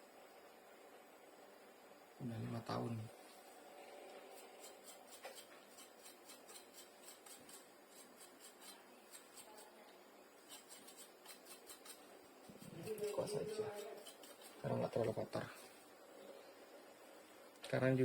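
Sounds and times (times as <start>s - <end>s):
small brush scratching: 3.2s - 15.9s.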